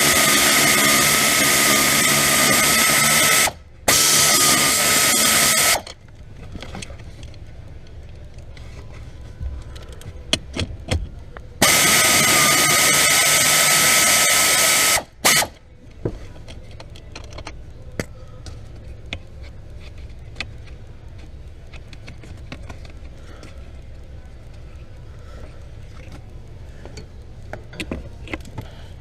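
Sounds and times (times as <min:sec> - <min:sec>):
power drill running: 0:00.0 - 0:05.9, 0:11.6 - 0:15.6.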